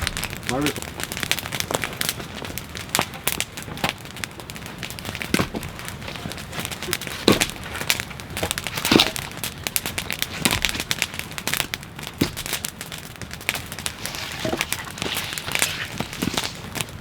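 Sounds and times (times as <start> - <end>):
dry wood crackling: 0.0 - 17.0
dull knocks: 5.3 - 5.8.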